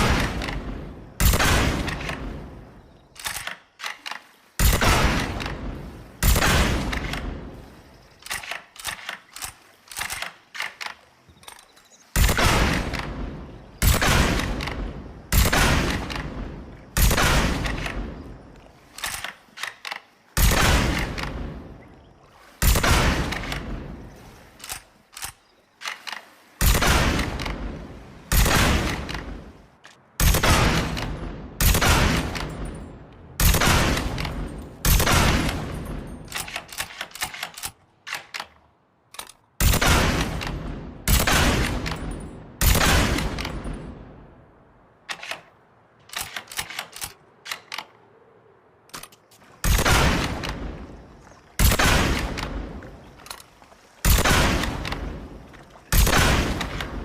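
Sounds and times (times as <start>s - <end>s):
rifle shots echoing: 0.0s - 3.9s, 4.6s - 7.7s, 12.2s - 18.3s, 20.4s - 21.8s, 22.6s - 24.0s, 26.6s - 29.6s, 30.2s - 32.7s, 33.4s - 37.0s, 39.6s - 44.0s, 49.6s - 53.4s, 54.0s - 57.0s.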